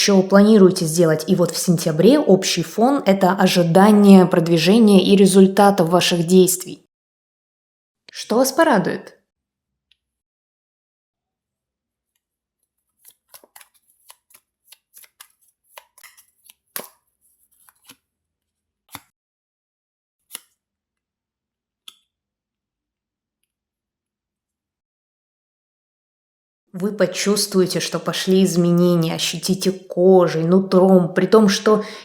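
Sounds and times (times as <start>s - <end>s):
cards snapping and rustling: 13.0s - 18.0s.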